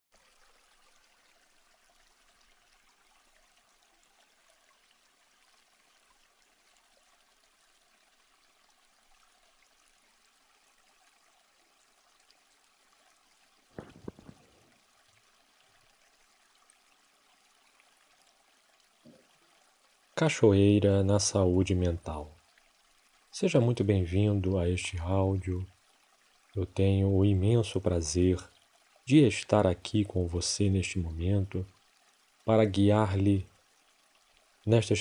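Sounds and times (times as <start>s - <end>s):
sharp clatter of knocks: 13.8s - 14.5s.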